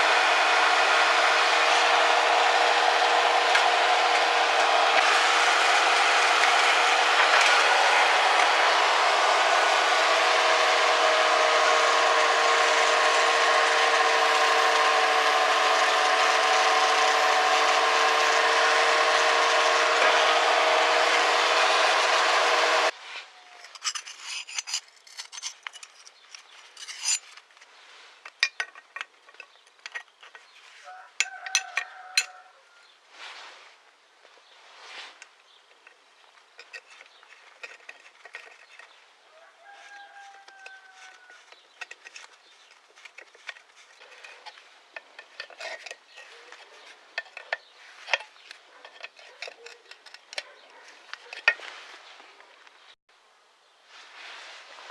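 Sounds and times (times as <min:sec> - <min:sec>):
power tool grinding whine: 0:00.0 - 0:23.0
light clicks and scraping: 0:23.6 - 0:32.4, 0:34.2 - 0:39.0, 0:39.6 - 0:52.9.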